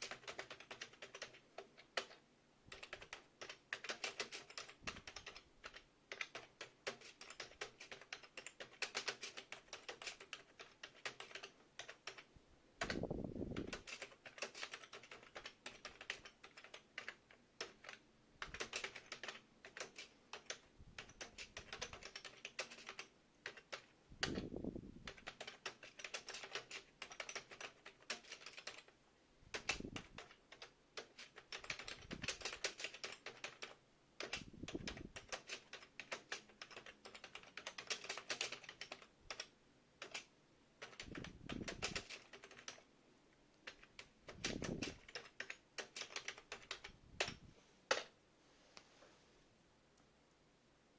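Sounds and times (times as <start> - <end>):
keyboard key clicks: 43.6 - 48.1.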